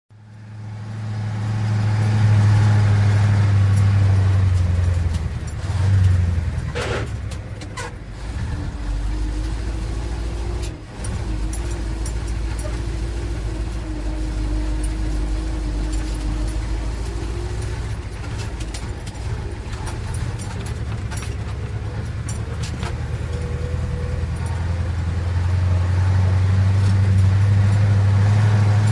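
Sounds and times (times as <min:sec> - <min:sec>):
old truck engine running: 0:00.1 - 0:28.9
clicks and rattles: 0:10.6 - 0:24.8.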